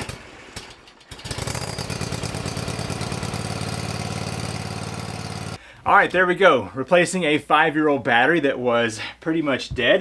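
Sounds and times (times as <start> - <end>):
mower engine starting and running: 0.0 - 5.6.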